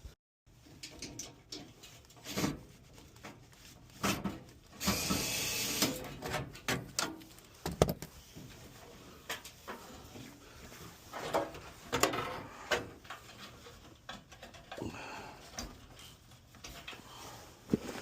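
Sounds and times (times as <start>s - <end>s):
tools clicking and clattering on metal: 0.6s - 2.3s.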